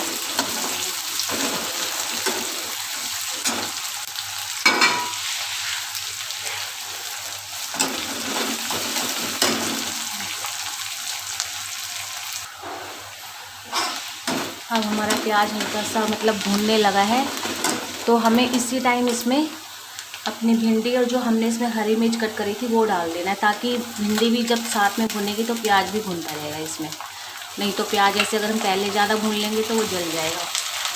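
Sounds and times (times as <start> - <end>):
onions sizzling in hot oil: 0.0 - 30.9
spoon scraping and knocking pan: 4.6 - 5.2.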